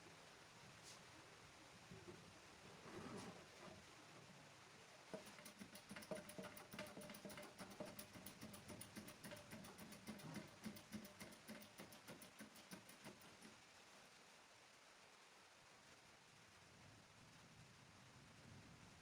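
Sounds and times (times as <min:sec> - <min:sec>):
quick ticking beat: 0:05.2 - 0:13.5.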